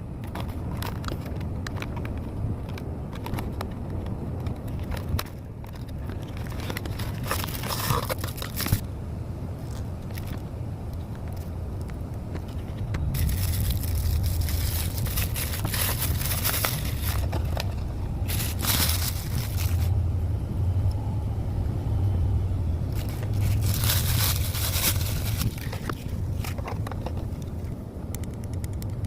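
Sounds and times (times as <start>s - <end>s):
steady low hum: 0.0s - 29.0s
plastic wrapping crinkling: 4.6s - 8.8s, 12.4s - 19.9s, 22.9s - 27.3s.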